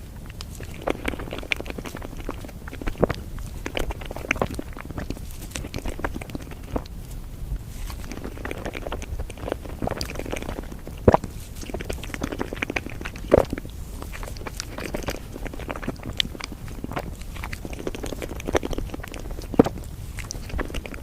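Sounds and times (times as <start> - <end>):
person chewing: 0.0 - 21.0.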